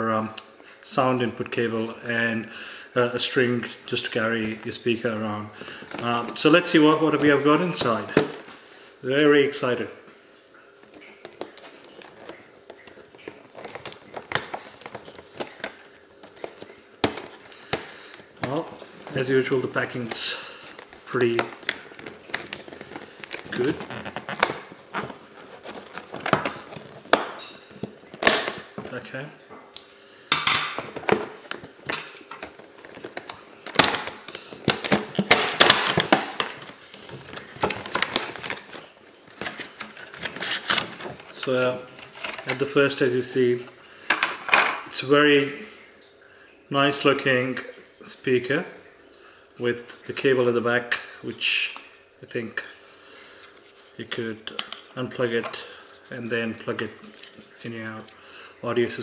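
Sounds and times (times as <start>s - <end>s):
packaging crinkling and rustling: 3.2s - 8.9s, 10.5s - 29.2s, 30.4s - 44.9s, 53.3s - 59.0s.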